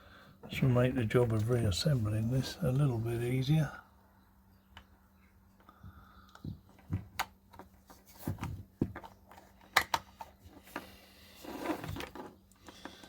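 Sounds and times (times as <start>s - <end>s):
rubbing and shuffling: 0.4s - 3.5s, 6.6s - 13.0s
sharp clicks and knocks of parts: 5.6s - 10.8s.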